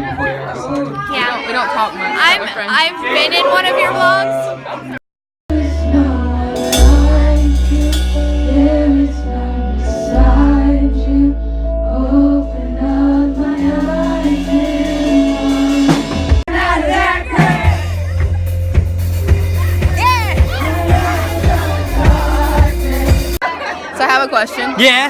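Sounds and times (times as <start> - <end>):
music with singing and bass: 5.5 - 23.4.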